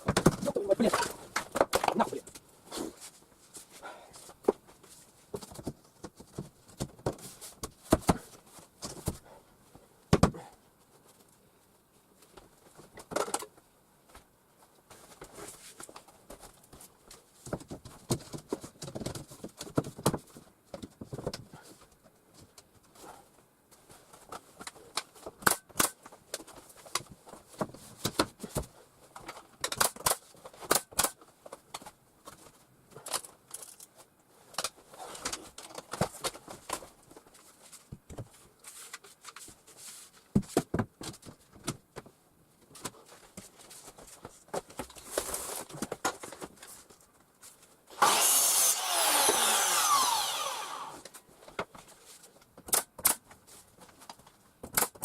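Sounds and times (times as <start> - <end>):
power tool running: 47.9 - 51.0.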